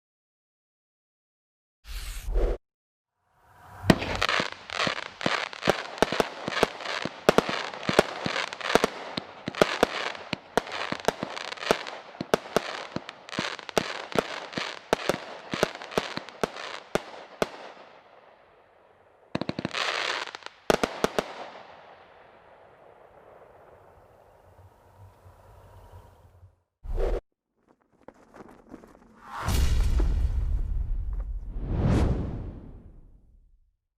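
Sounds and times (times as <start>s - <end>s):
firework crackling: 3.7s - 17.8s
firework shots: 3.8s - 18.0s.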